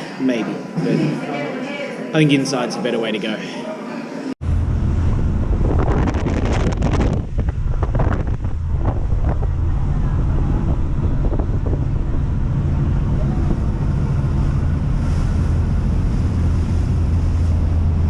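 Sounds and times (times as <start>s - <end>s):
ferry engine drone: 4.4s - 18.0s
wind buffeting microphone: 4.5s - 18.0s.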